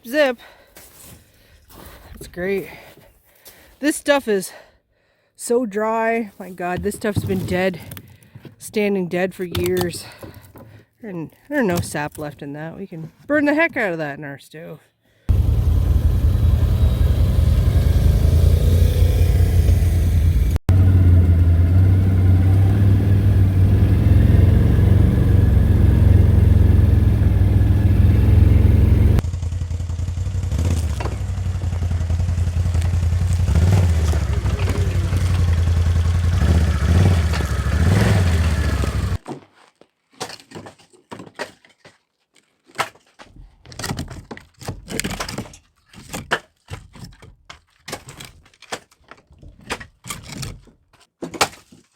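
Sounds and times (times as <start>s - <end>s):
small gasoline engine running: 15.3s - 39.2s.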